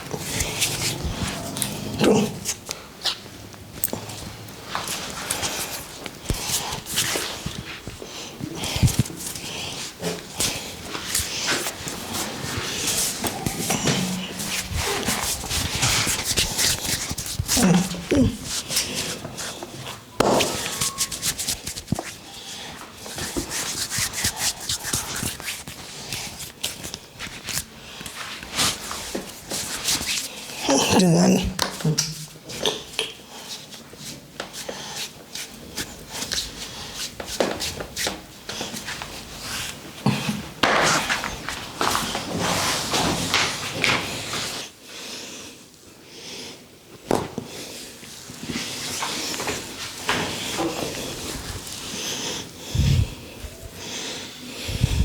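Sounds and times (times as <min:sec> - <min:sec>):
hands rubbing hair rustling: 0:00.1 - 0:01.6, 0:04.7 - 0:08.0, 0:08.6 - 0:19.6, 0:20.4 - 0:30.5.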